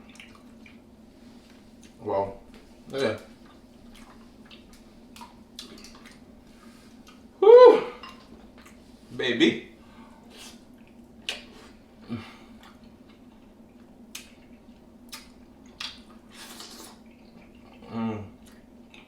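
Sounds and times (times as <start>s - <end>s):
wet eating sounds: 0.0s - 7.3s, 7.9s - 9.0s, 10.3s - 19.0s
person humming: 7.4s - 8.0s, 17.8s - 18.3s.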